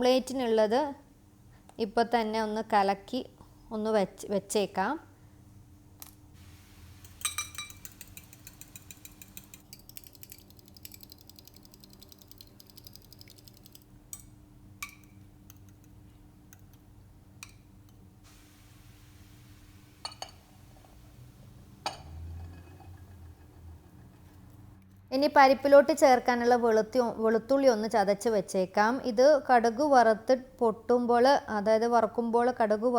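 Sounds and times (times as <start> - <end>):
eggs beaten in a bowl: 6.6 - 13.9
dishes clinking: 7.0 - 9.6, 19.9 - 21.0, 21.8 - 23.6.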